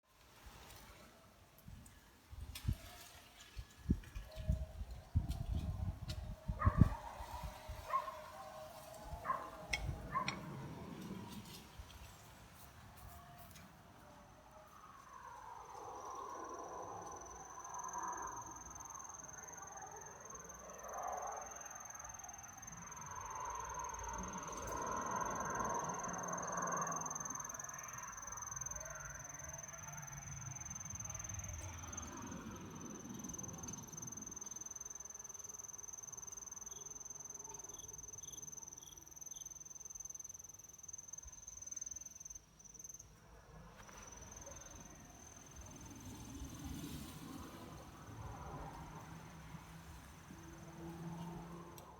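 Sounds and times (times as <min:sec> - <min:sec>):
high-pitched insect trill: 0:15.2 - 0:43.2.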